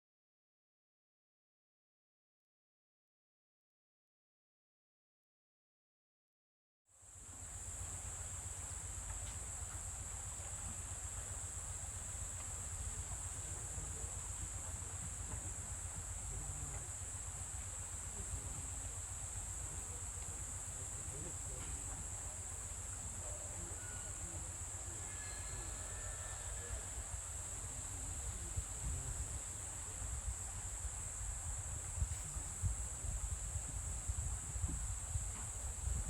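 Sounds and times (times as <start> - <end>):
wind buffeting microphone: 27.6 - 36.0.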